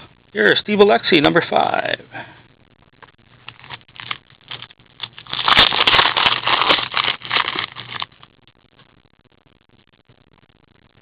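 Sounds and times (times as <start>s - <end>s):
card pack crinkling and rustling: 3.4s - 8.3s.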